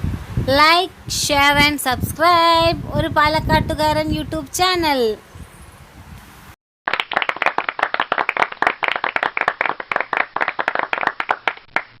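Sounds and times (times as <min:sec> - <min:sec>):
small group applauding: 0:06.9 - 0:12.0.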